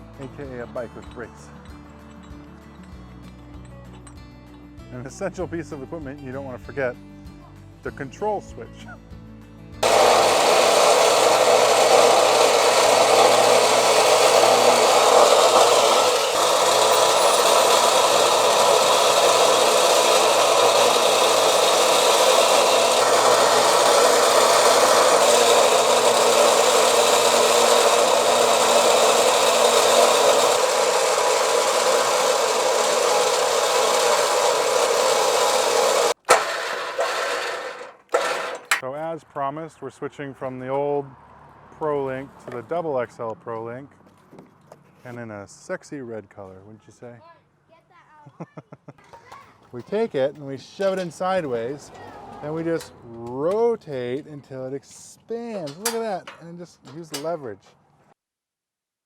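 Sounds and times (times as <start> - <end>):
electric winch running: 9.8 - 38.8.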